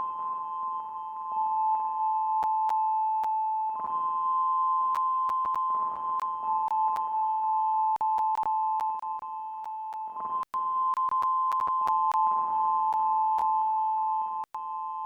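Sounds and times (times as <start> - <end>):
sharp clicks and pops: 5.3 - 5.6, 8.0 - 12.2.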